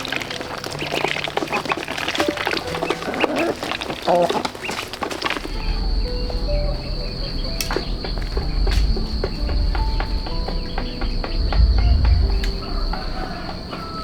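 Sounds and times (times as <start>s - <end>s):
insects droning: 0.0s - 14.0s
low rumble: 5.4s - 13.8s.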